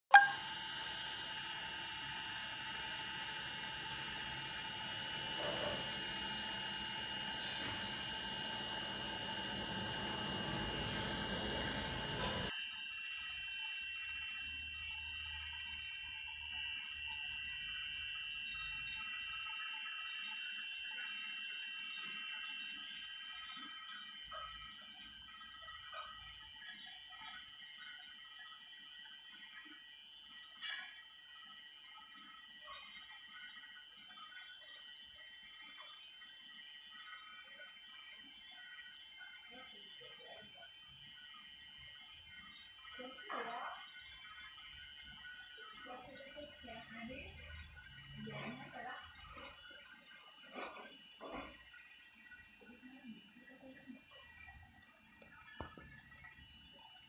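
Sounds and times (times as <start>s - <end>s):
lathe whining: 0.3s - 19.2s.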